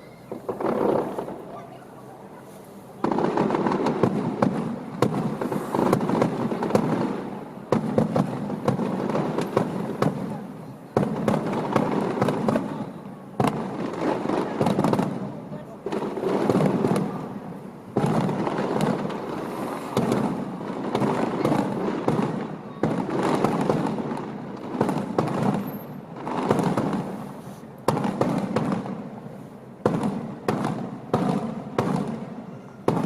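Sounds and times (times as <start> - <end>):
fireworks shells bursting: 0.0 - 1.5.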